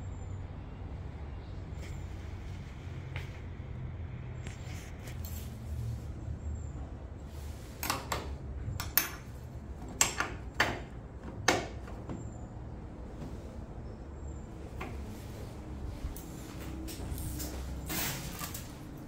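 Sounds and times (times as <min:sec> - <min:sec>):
sharp clanks and knocks: 0:07.8 - 0:12.3.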